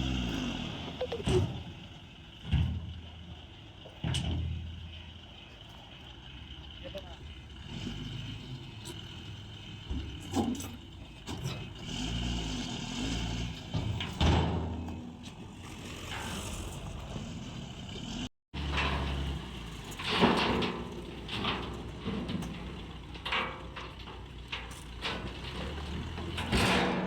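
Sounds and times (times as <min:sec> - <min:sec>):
excavator diesel engine running: 0:00.0 - 0:27.0
sharp metal knocks and clanks: 0:18.6 - 0:27.0.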